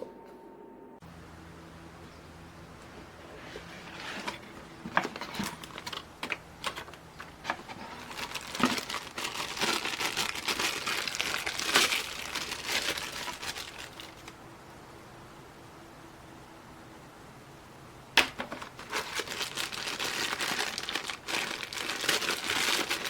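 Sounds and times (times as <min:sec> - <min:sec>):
crinkly plastic handled: 0:02.8 - 0:14.4, 0:18.2 - 0:23.0.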